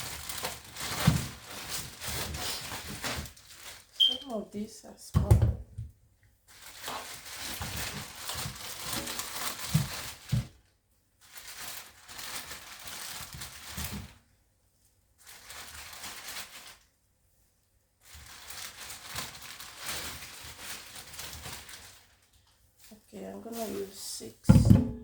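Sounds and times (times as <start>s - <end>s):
plastic bag crinkling: 0.0s - 4.4s, 6.5s - 10.6s, 11.2s - 14.2s, 15.2s - 16.9s, 18.0s - 24.1s
soft thumps: 24.5s - 25.0s.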